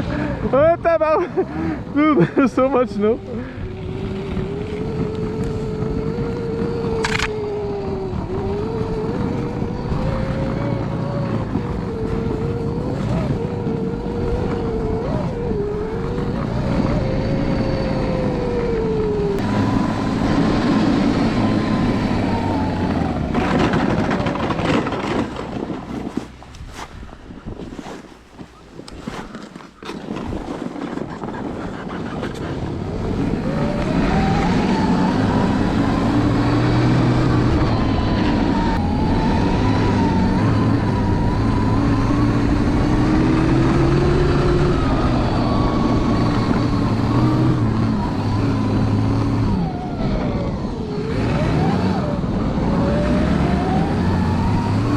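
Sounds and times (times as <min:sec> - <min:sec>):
track churning snow: 0:00.0 - 0:54.9
electric motor whine: 0:03.0 - 0:23.9.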